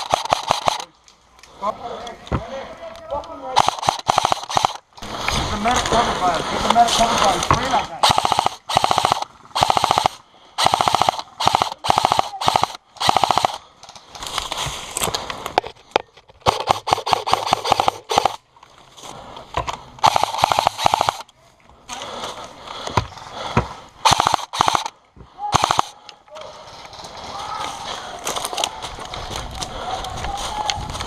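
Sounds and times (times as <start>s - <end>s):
airsoft rifles firing full-auto: 0.0s - 0.9s, 3.6s - 5.2s, 7.3s - 13.7s, 16.4s - 18.4s, 20.0s - 21.3s, 24.0s - 26.0s.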